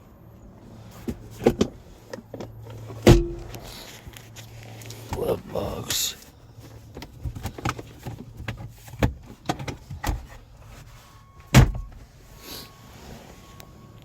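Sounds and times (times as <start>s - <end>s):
glove box clicks and knocks: 1.0s - 3.7s, 6.7s - 10.4s
loud thump: 3.1s - 3.5s.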